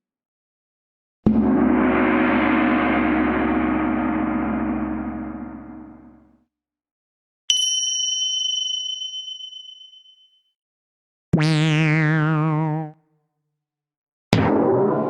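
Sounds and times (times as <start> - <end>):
small bell ringing: 7.5 - 10.4
cartoon boing sound effect: 11.4 - 13.0.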